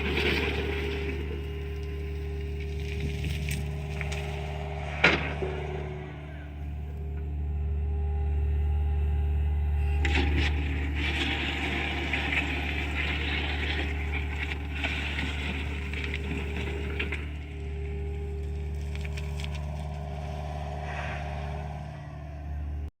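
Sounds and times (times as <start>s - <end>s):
excavator diesel engine droning: 0.0s - 23.0s.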